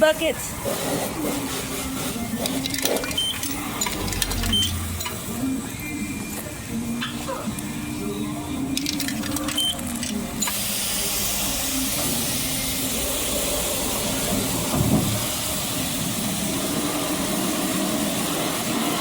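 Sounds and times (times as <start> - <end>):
coins clicking into machine: 2.4 - 5.3, 8.7 - 10.6
high-pressure spray hissing: 10.4 - 19.0.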